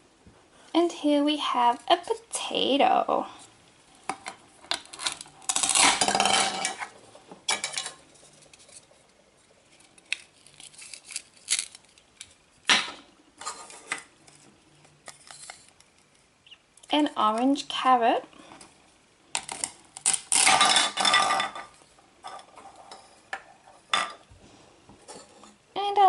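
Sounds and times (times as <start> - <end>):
velcro ripping: 4.9 - 6.1, 10.1 - 12.0.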